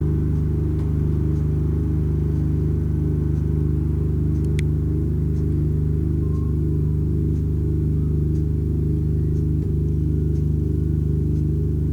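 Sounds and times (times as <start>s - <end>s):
synthesized low buzzing drone: 0.0s - 11.9s
faint tick: 4.3s - 4.7s, 8.3s - 8.5s.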